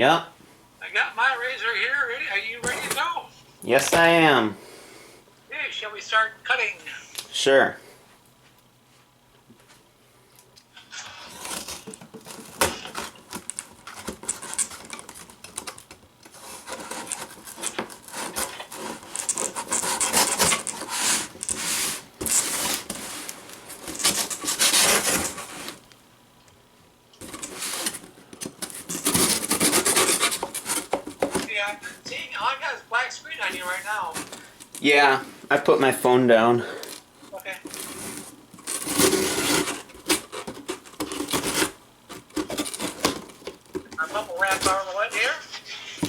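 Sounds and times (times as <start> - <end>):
knife cutting cardboard box: 16.4 - 23.0, 23.9 - 25.7, 28.6 - 31.4, 37.8 - 43.3.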